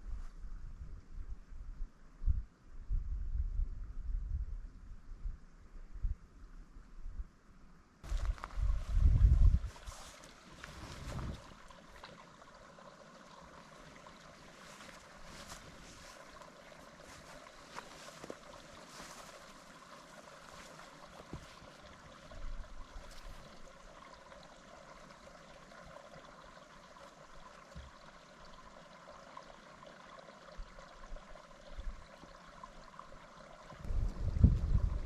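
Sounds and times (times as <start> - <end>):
faint low bumps: 8.0 - 12.2, 33.8 - 35.0
mountain stream running: 8.0 - 35.0.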